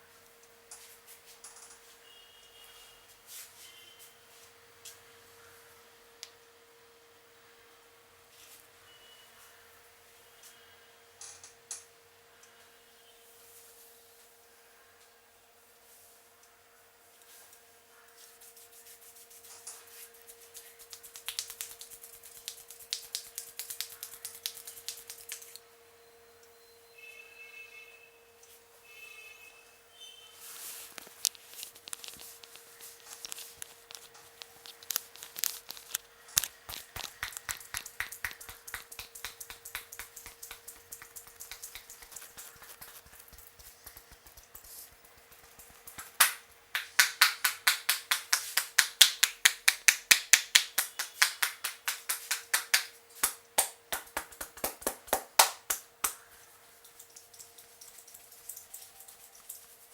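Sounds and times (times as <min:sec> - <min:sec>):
faint steady hum: 0:00.0 - 0:59.9
hands slapping and snapping: 0:20.4 - 0:25.6, 0:33.2 - 0:56.3.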